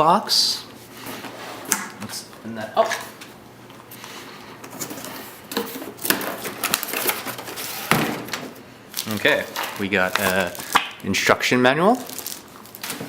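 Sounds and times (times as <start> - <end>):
cardboard box rustling and scraping: 6.9 - 8.2.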